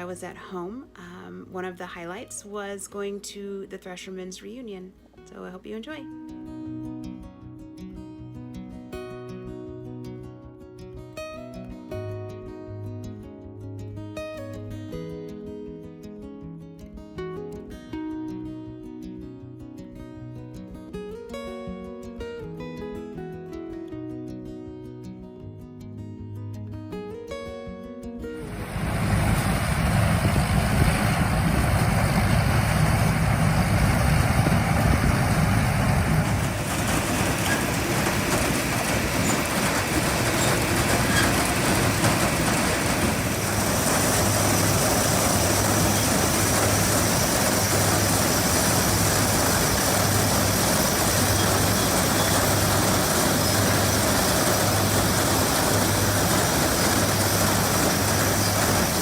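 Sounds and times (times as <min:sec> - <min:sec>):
farm machinery running: 0:28.4 - 0:59.0.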